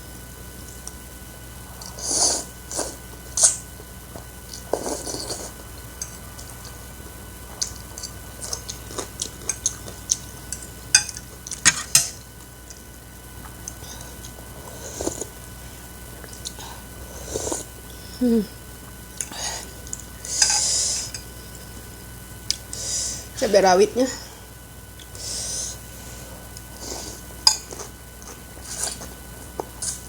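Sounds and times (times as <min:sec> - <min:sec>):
slurping and chewing: 0:01.7 - 0:15.4, 0:16.1 - 0:17.7, 0:25.0 - 0:30.0.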